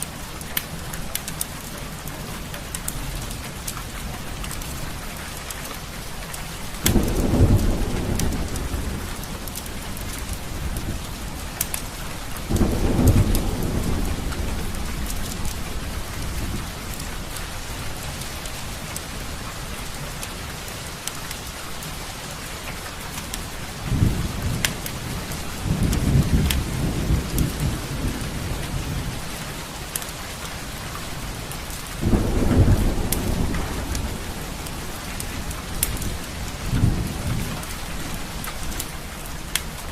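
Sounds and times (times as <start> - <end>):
steady rain: 0.0 - 39.9
thunder rumbling: 6.7 - 20.5, 23.5 - 29.7, 30.7 - 39.8.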